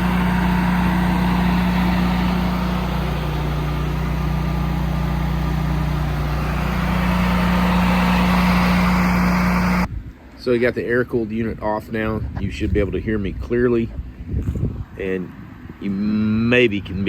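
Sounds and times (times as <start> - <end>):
generator engine humming: 0.0 - 9.9.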